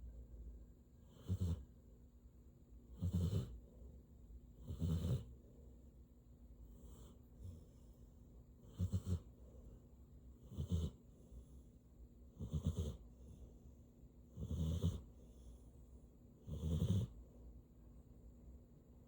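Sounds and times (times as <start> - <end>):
dog snoring: 1.0 - 1.7, 2.9 - 3.7, 4.6 - 5.4, 6.7 - 8.0, 8.6 - 9.6, 10.4 - 11.7, 12.3 - 13.5, 14.3 - 15.7, 16.4 - 17.2.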